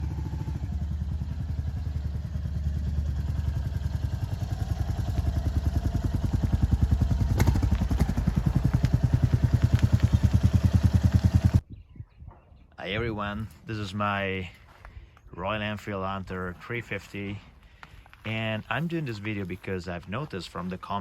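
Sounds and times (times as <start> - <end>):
single-cylinder motorcycle engine running: 0.0 - 11.6.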